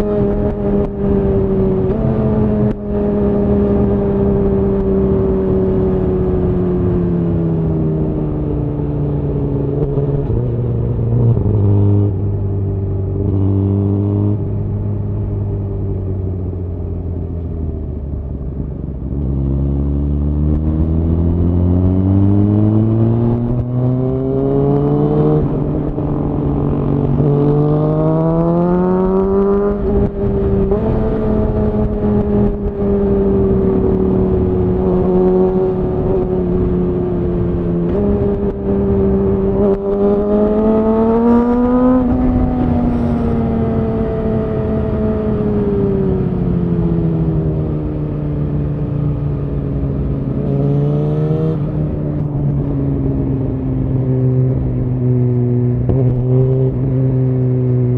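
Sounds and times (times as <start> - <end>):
motorcycle engine revving: 19.3 - 57.9.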